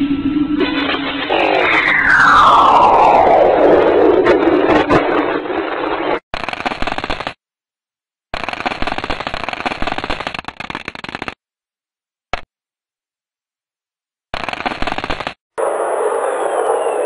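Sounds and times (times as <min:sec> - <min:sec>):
dense fast clicks over hiss: 0:06.4 - 0:07.4, 0:08.4 - 0:11.4.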